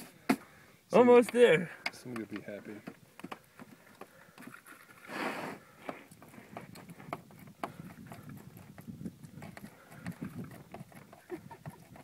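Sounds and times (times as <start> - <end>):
short hiss: 5.1 - 5.6.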